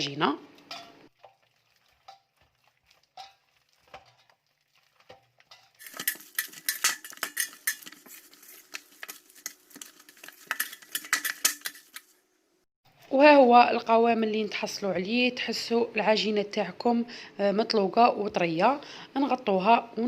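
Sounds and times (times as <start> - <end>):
wet clicking and squelching dough: 0.5 - 12.1
hands kneading dough: 5.8 - 12.1.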